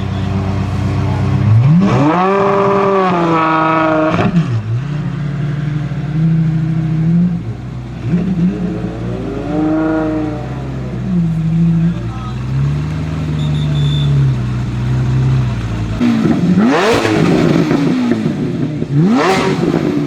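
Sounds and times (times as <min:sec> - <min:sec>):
car engine revving hard: 0:00.0 - 0:20.0.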